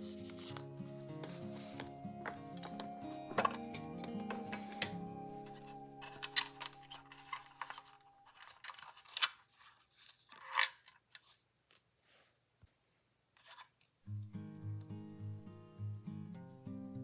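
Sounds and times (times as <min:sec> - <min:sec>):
background music: 0:00.0 - 0:08.4
paper snipping and rustling: 0:00.0 - 0:11.8.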